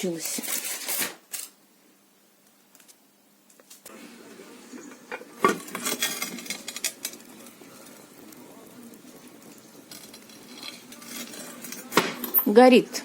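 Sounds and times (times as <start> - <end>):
steady hiss: 1.7 - 12.4
metal clinking at a stove: 5.1 - 8.3, 9.1 - 12.6.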